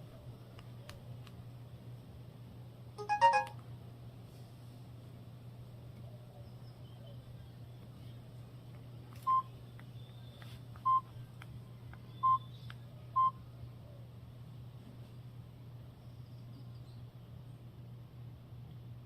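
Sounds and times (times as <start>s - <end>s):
high electronic phone beeps: 3.0s - 3.6s.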